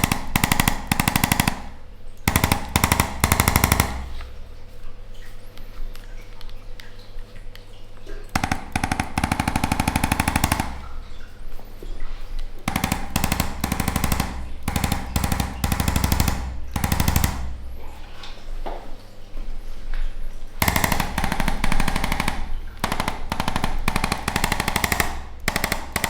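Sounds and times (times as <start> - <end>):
percussion massager hammering: 0.0 - 4.5, 8.4 - 11.1, 12.7 - 18.0, 20.6 - 26.0.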